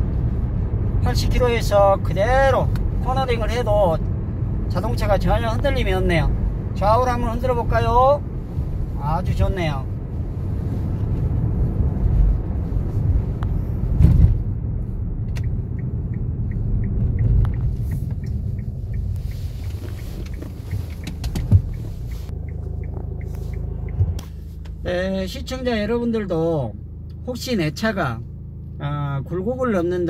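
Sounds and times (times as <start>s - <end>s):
road and engine rumble: 0.0s - 30.0s
car thump: 13.4s - 14.6s, 19.6s - 22.1s, 23.9s - 24.8s
light regular ticking: 15.2s - 25.8s.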